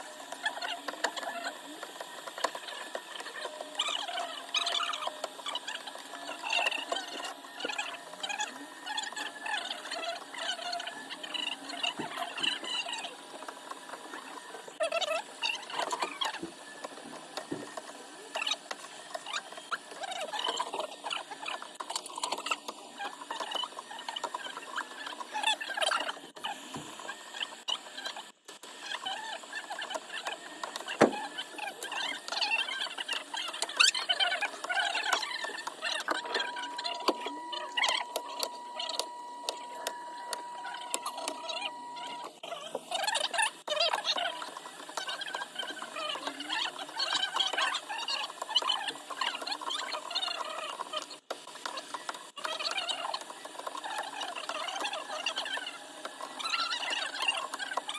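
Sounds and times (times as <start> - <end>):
small tools scraping and squeaking: 0.0 - 57.9.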